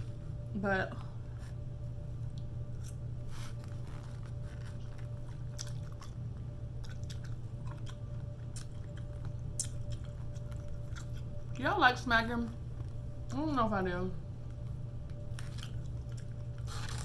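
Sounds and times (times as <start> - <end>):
steady low hum: 0.0 - 17.0
person chewing food: 2.2 - 11.6, 14.6 - 17.0.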